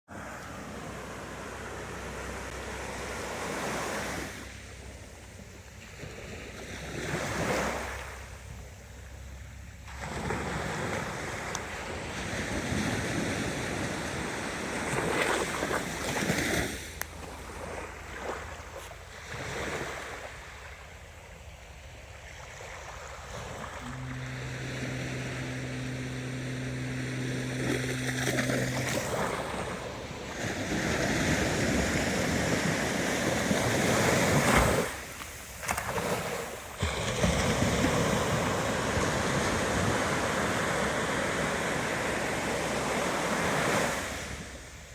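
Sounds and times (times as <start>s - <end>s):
low steady hum: 0.1s - 34.0s
ocean waves washing: 0.1s - 44.8s.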